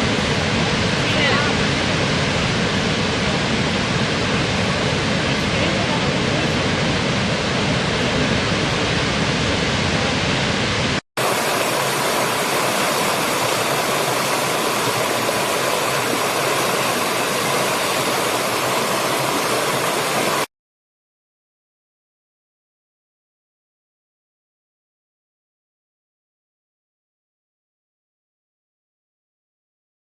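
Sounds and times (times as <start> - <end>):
waterfall rushing: 0.0 - 20.5.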